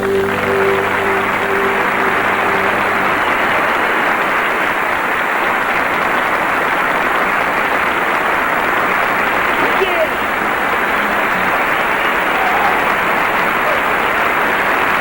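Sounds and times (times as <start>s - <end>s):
band held chord: 0.0s - 5.0s
audience applauding: 0.0s - 15.0s.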